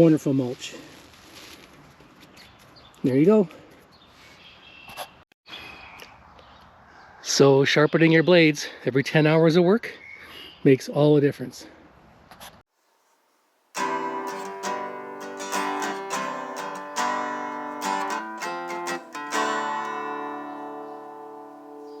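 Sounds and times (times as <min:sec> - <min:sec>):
acoustic guitar strumming: 0:13.8 - 0:22.0.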